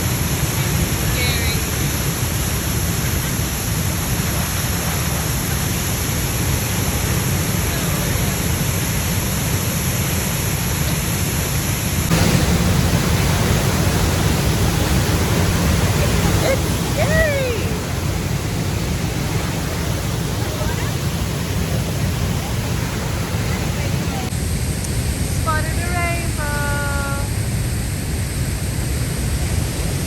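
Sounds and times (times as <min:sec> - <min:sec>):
water jet rushing: 0:11.9 - 0:24.3.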